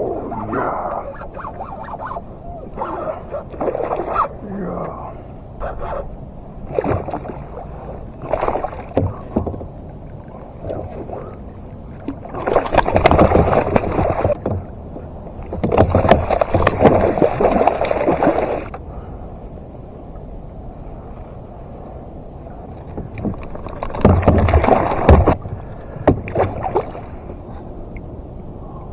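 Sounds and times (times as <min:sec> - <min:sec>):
water splashing: 0:00.0 - 0:18.8, 0:22.8 - 0:27.6.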